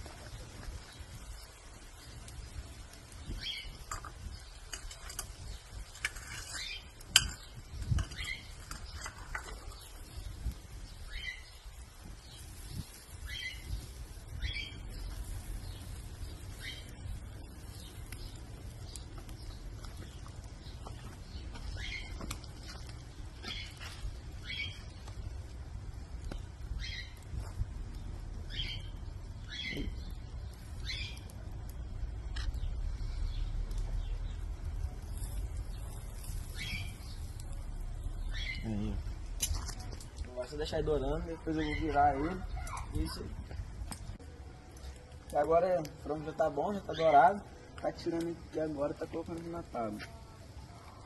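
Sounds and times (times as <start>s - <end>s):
bird chirping: 3.2s - 25.4s, 26.3s - 27.2s, 27.8s - 39.4s, 40.0s - 44.2s
low steady rumble: 24.0s - 45.3s.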